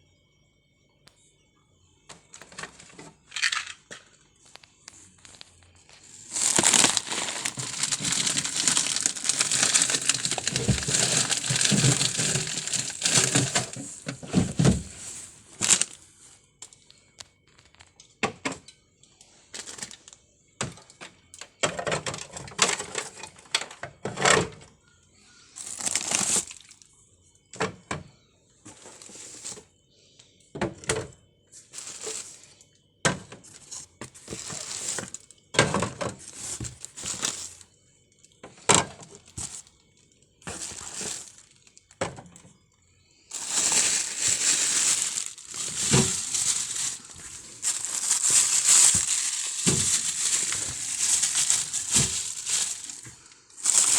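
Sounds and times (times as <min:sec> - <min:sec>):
plastic bags rustling and crinkling: 0:05.0 - 0:16.3, 0:19.5 - 0:20.1, 0:25.6 - 0:26.8, 0:28.7 - 0:29.7, 0:31.6 - 0:32.6, 0:33.4 - 0:37.7, 0:38.6 - 0:39.8, 0:40.4 - 0:42.2, 0:43.3 - 0:53.9.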